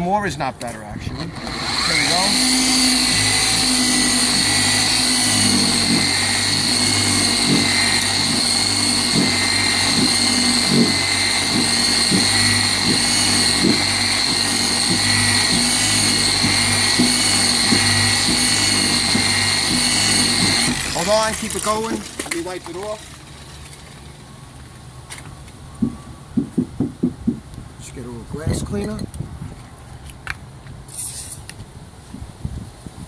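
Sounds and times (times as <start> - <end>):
car polisher whining: 1.2 - 25.0.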